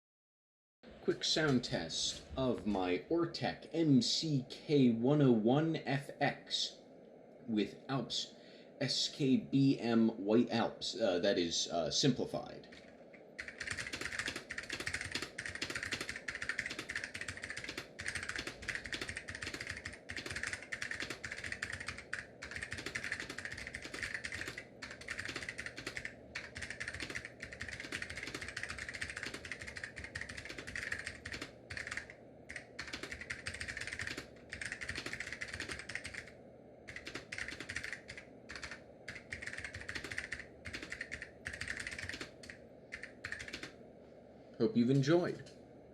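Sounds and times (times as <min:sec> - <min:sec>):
fast keyboard typing: 0:12.6 - 0:43.8.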